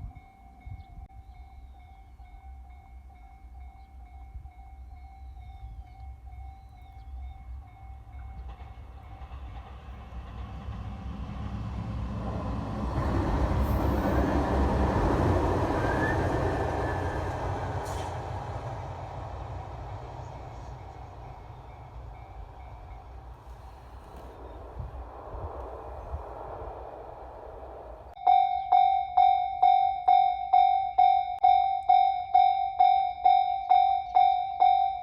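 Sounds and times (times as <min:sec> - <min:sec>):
level-crossing warning bell: 0:00.0 - 0:09.8, 0:13.3 - 0:23.4, 0:28.1 - 0:35.0
train rumbling past: 0:00.0 - 0:28.2.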